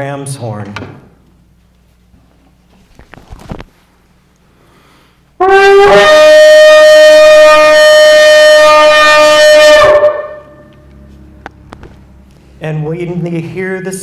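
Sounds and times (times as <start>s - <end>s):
ram's horn blast: 5.4s - 11.4s.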